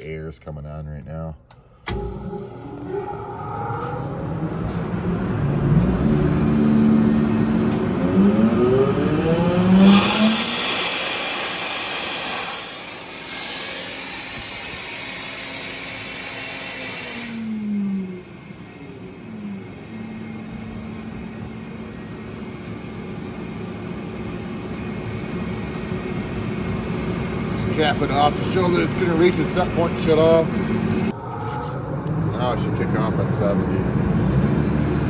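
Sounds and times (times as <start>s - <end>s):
air compressor humming: 9.6s - 31.2s
compressed air hissing loudly: 9.8s - 17.6s, 21.9s - 31.1s.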